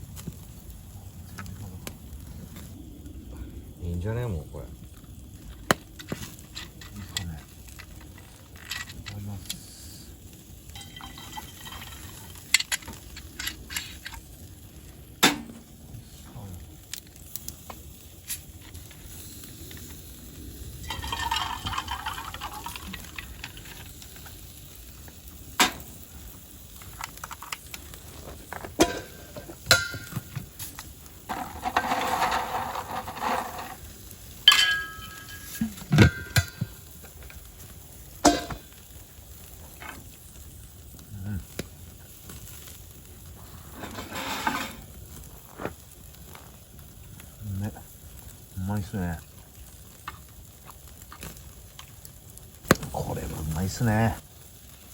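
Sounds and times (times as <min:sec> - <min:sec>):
metal tableware clinking: 0:10.8 - 0:12.1, 0:20.9 - 0:22.8, 0:34.5 - 0:36.7, 0:38.3 - 0:38.6, 0:43.8 - 0:44.8
rushing pouring noise: 0:18.5 - 0:25.0.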